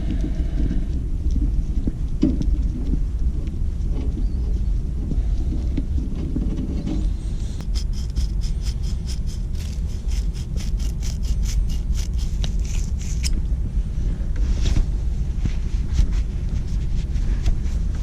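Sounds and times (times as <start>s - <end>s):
low rumble: 0.0s - 18.0s
quick scraping strokes: 7.0s - 13.3s.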